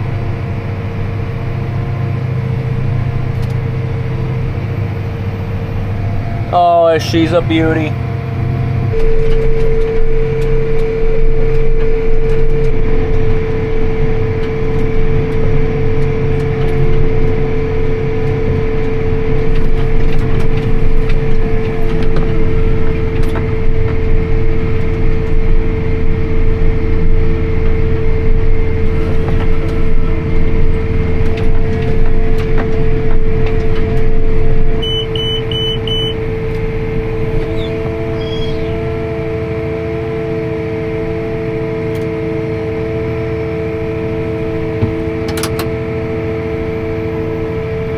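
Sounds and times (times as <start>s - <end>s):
tractor engine under load: 0.0s - 46.9s
machinery whine: 0.0s - 47.9s
short high electronic beeps: 34.8s - 36.2s.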